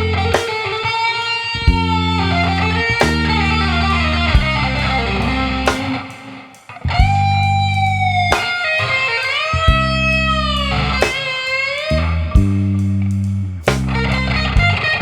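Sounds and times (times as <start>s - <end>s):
sustained bass notes: 0.0s - 0.4s, 1.6s - 6.0s, 6.8s - 8.5s, 9.6s - 11.2s, 11.9s - 15.0s
electric guitar blues solo: 0.0s - 13.1s, 13.8s - 15.0s.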